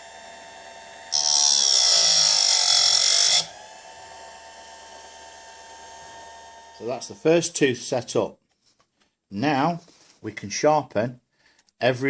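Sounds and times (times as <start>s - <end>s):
grinding wheel whirring: 0.0s - 8.1s
grinding wheel screeching on chain: 1.2s - 3.5s.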